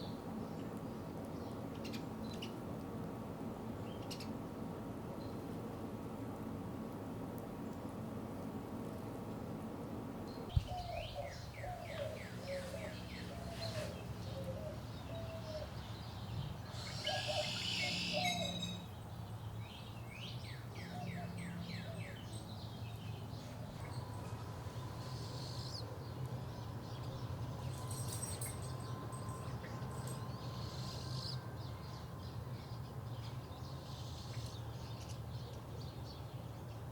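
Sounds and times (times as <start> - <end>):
birds calling and singing: 10.4 - 36.9.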